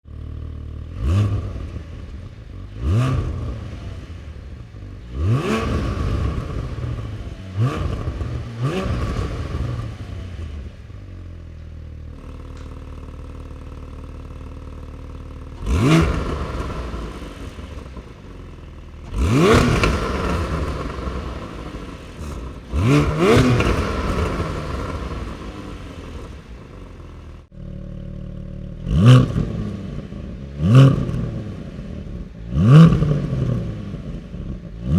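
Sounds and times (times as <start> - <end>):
car engine idling: 0.0 - 34.9
car engine revving: 0.1 - 11.4, 12.1 - 34.9.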